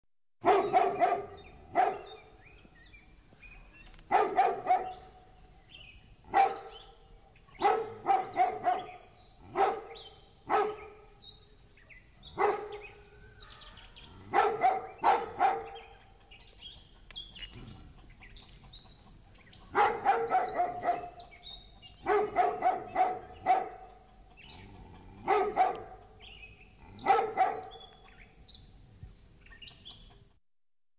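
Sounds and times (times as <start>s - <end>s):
large dog barking: 0.4s - 2.3s, 4.1s - 5.2s, 6.2s - 11.2s, 12.2s - 13.0s, 14.2s - 16.1s, 19.6s - 28.0s.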